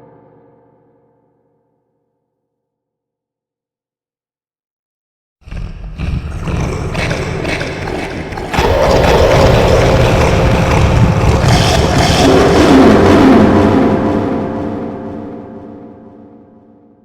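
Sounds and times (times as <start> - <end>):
monster growling roar: 5.4 - 15.2.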